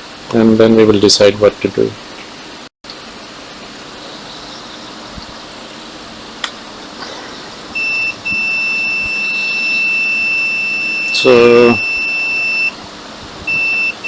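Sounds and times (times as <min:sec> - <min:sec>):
multimeter continuity beep: 0:07.8 - 0:12.8, 0:13.5 - 0:14.0.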